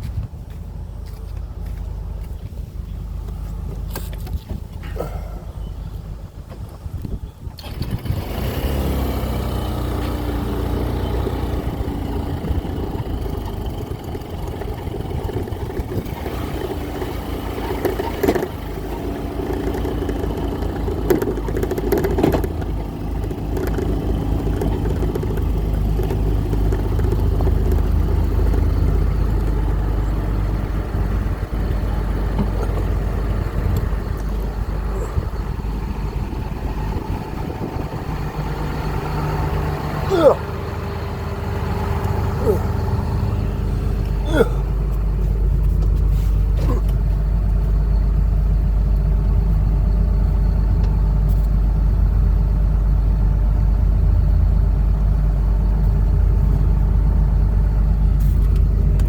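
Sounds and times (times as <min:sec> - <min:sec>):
engine running with low rumble: 0:00.0 - 0:59.0
short clanks: 0:17.6 - 0:30.1.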